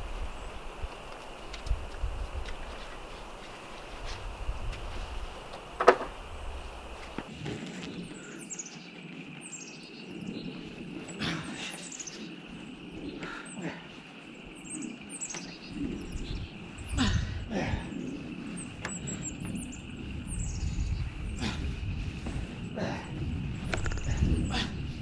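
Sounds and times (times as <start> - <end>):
birds chirping: 0.0 - 25.0
outdoor background noise: 0.0 - 25.0.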